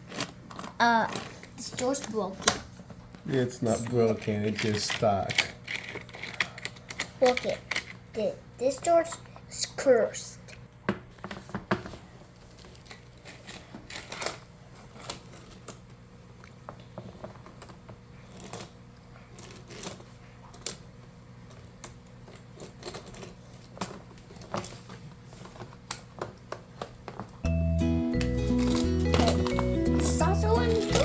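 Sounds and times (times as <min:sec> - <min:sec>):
toy pieces clicking: 0:04.4 - 0:08.0
music: 0:27.4 - 0:31.0.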